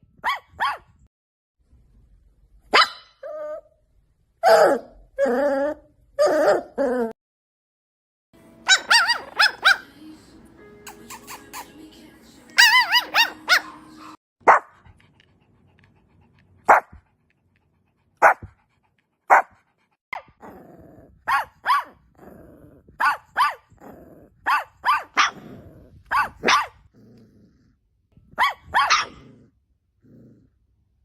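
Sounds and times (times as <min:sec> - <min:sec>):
dog yipping: 0:00.2 - 0:00.9, 0:02.7 - 0:03.6, 0:08.7 - 0:09.8, 0:12.6 - 0:14.7, 0:21.3 - 0:22.0, 0:23.0 - 0:23.6, 0:24.5 - 0:25.4, 0:26.1 - 0:26.8, 0:28.4 - 0:29.2.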